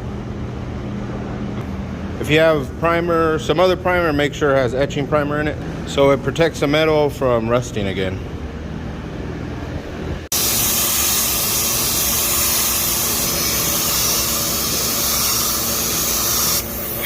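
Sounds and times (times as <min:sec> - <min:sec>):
spray paint hissing: 0:10.3 - 0:17.0.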